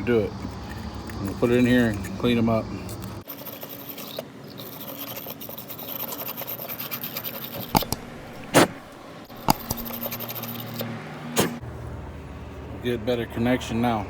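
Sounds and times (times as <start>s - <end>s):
wire brush scrubbing metal: 3.2s - 11.6s.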